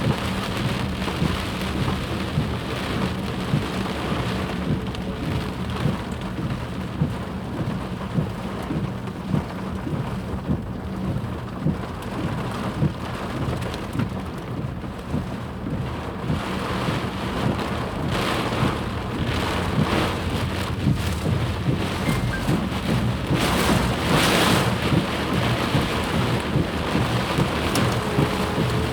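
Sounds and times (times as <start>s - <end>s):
floodwater rushing: 16.7s - 28.9s.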